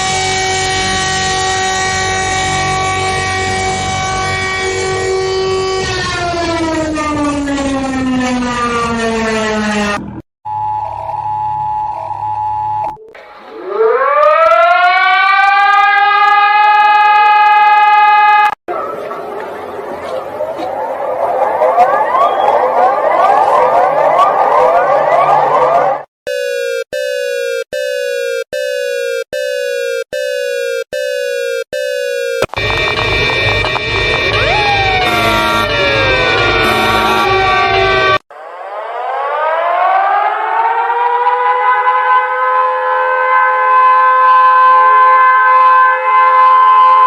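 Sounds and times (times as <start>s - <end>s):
civil defense siren wailing: 0.0s - 26.1s, 32.6s - 47.0s
emergency alert two-tone signal: 10.5s - 15.8s, 26.3s - 40.4s.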